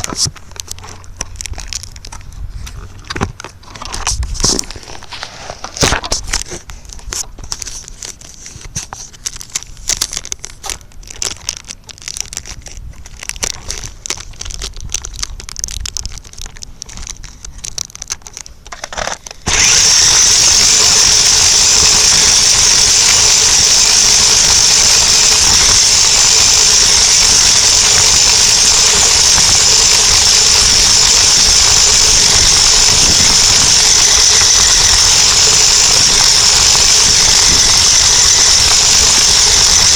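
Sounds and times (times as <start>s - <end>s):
clicks and rustles: 0.0s - 19.5s
toy truck motor whining: 18.7s - 39.9s.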